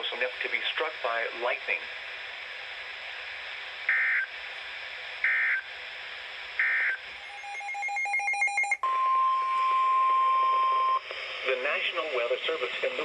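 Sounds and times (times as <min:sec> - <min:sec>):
steady single-pitch alarm tone: 0:06.6 - 0:09.8.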